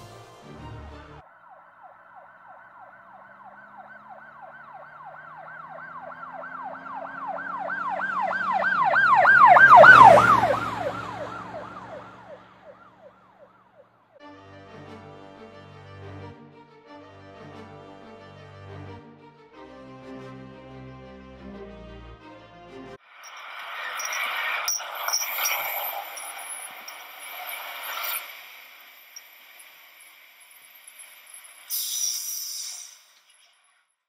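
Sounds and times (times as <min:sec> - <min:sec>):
siren yelping: 0:01.2 - 0:13.9
vehicle rumble: 0:01.2 - 0:14.1, 0:23.2 - 0:31.7.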